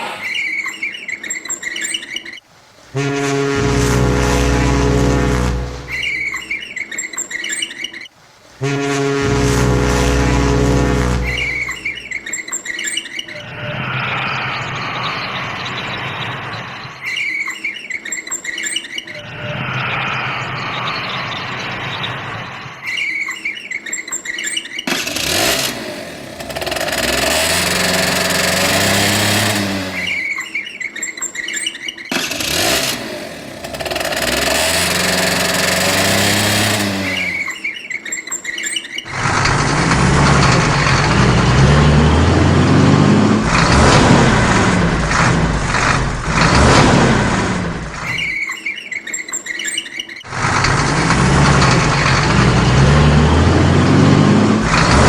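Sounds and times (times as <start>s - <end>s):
car engines accelerating: 3.3s - 6.6s, 9.0s - 12.3s, 24.8s - 30.4s, 32.1s - 37.6s, 39.1s - 48.3s, 50.3s - 55.0s
high chirping: 5.8s - 8.1s, 11.3s - 13.8s, 30.0s - 32.8s, 37.1s - 39.1s.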